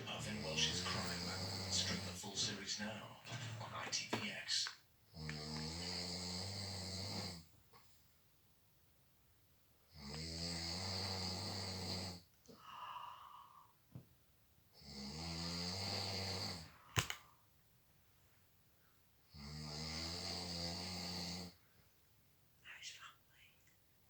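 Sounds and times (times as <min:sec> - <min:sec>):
man snoring: 0:00.0 - 0:02.6, 0:05.1 - 0:07.5, 0:09.9 - 0:13.5, 0:14.8 - 0:16.8, 0:19.3 - 0:21.6
soft breath: 0:12.5 - 0:13.8.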